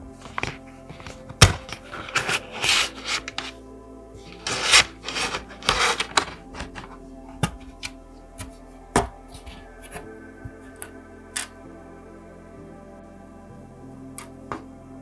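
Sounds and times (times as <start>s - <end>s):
laptop parts scraping: 0.0s - 3.6s, 4.2s - 11.5s
soft background music: 0.0s - 15.0s.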